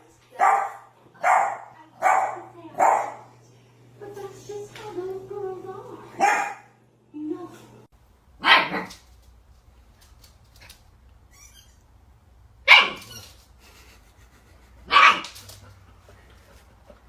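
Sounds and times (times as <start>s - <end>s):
dog barking: 0.3s - 3.3s, 6.2s - 6.8s, 8.4s - 9.0s, 12.6s - 13.2s, 14.9s - 15.4s.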